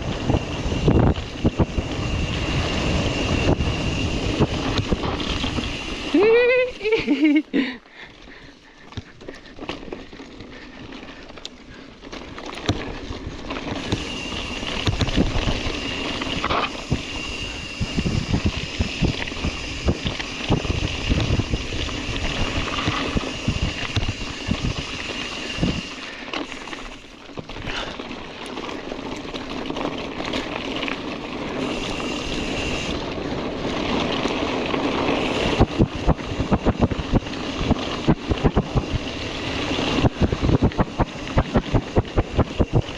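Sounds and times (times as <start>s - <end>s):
wind buffeting microphone: 0.0s - 6.9s, 13.7s - 25.9s, 31.6s - 42.9s
tyres on loose ground: 0.0s - 42.9s
bike jolting with low thuds: 7.0s - 42.9s.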